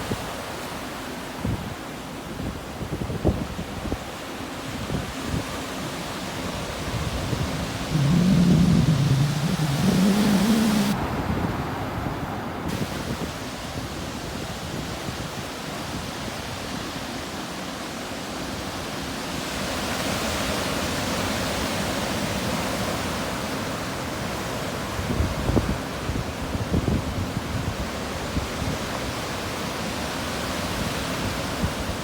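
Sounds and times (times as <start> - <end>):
surf washing on shore: 0.0 - 32.0
wind buffeting microphone: 6.6 - 15.5.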